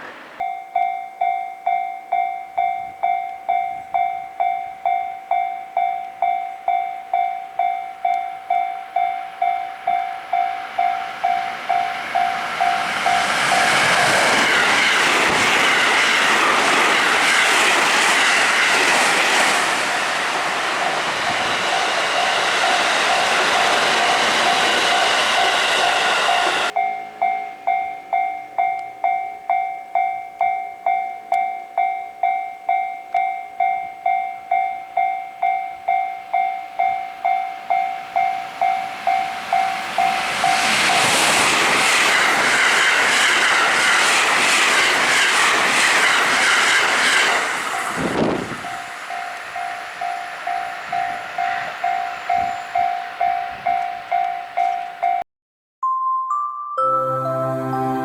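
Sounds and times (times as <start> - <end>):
level crossing warning bell: 0.1 - 18.8, 19.6 - 41.4, 42.1 - 55.2
train rumble and wheel clatter: 8.0 - 27.3, 38.1 - 55.1.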